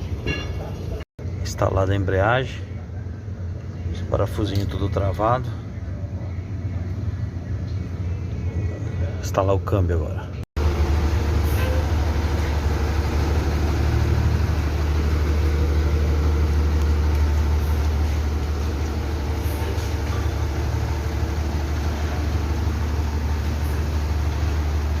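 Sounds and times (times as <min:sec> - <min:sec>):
diesel engine idling: 0:10.6 - 0:25.0.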